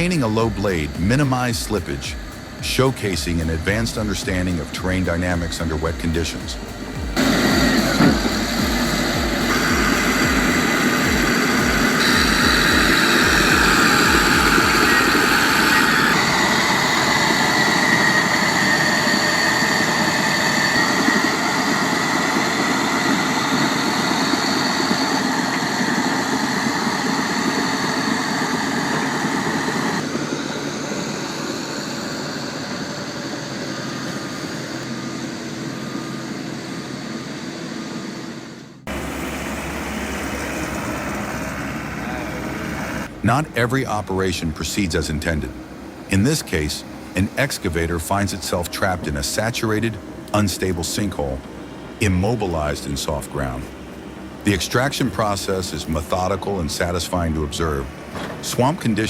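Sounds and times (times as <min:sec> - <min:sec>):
bulldozer diesel engine under load: 0:00.0 - 0:35.0, 0:38.9 - 0:44.2.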